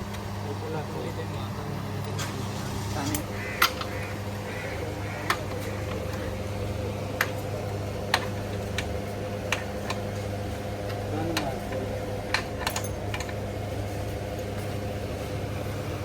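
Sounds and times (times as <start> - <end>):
tools clicking and knocking: 10.9 - 13.4.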